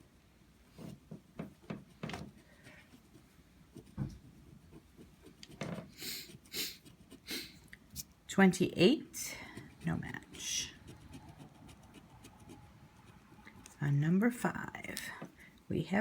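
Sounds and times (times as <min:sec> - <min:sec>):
scratching lottery ticket: 0:02.2 - 0:07.6, 0:09.4 - 0:14.0.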